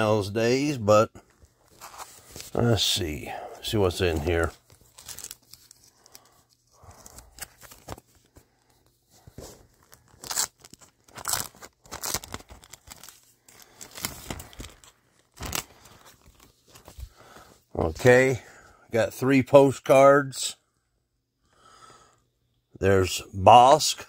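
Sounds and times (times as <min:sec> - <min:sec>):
wrapper crinkling and rustling: 0:03.9 - 0:17.5
wrapper ripping: 0:04.5 - 0:08.0, 0:09.8 - 0:16.5.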